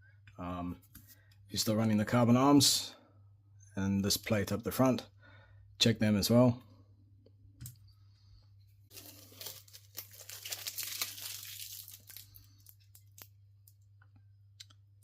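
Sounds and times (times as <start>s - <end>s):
rustling handling noise: 8.9s - 13.3s.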